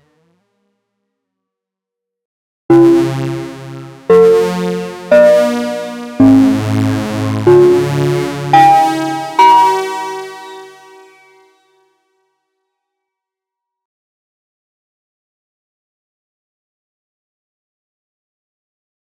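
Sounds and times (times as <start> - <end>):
synthesizer chords: 2.7 - 11.4.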